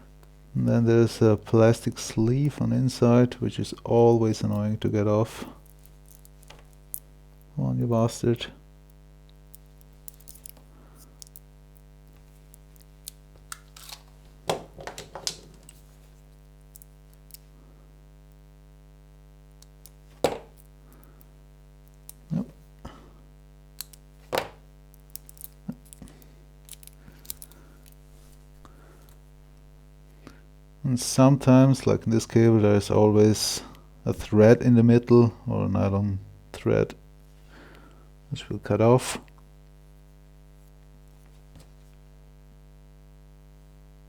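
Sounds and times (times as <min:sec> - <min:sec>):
low electrical hum: 0:00.0 - 0:44.0
plastic sleeve crinkling: 0:04.3 - 0:08.4, 0:09.4 - 0:17.5, 0:23.8 - 0:29.8.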